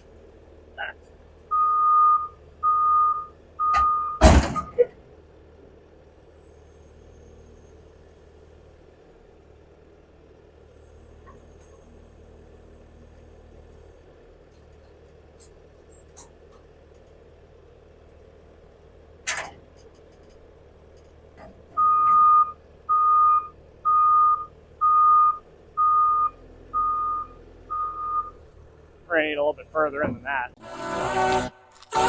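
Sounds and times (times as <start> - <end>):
low engine hum: 0.0 - 32.0
reversing alarm beeping: 1.5 - 4.8, 21.8 - 28.4
loud thunk: 4.2 - 4.8.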